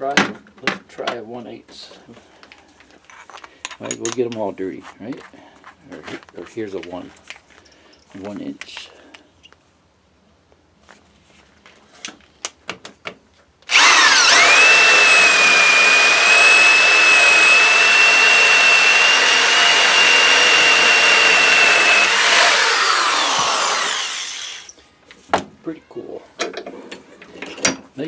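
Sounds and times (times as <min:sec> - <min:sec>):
electric drill boring through wood: 0:13.7 - 0:24.8.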